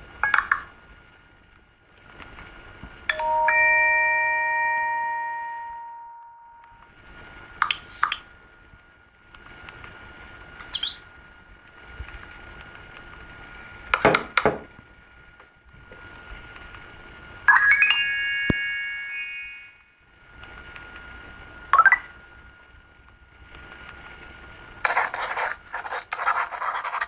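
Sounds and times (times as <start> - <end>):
phone ringing alert tone: 3.1 - 6.8.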